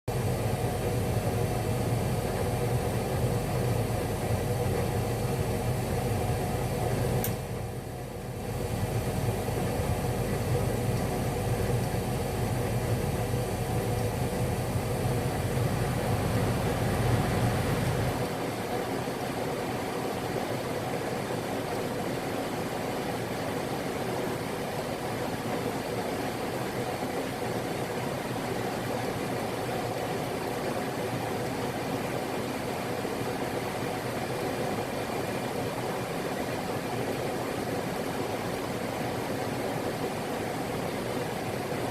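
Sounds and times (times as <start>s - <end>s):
furnace humming: 0.1s - 41.9s
sharp click: 7.2s - 7.4s
furnace hiss: 13.5s - 18.3s.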